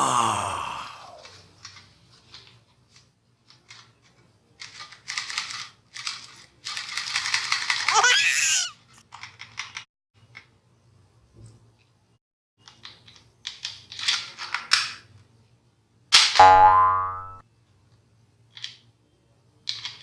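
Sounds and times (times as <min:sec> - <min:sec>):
child laughing: 0:07.9 - 0:08.8.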